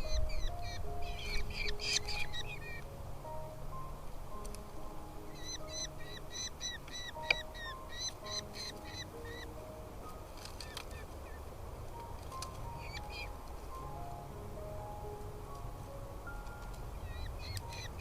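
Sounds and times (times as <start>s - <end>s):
high repeated bird calls: 0.0s - 2.9s, 5.2s - 9.7s, 12.4s - 13.4s, 16.9s - 18.0s
background music with sustained notes: 0.0s - 18.0s.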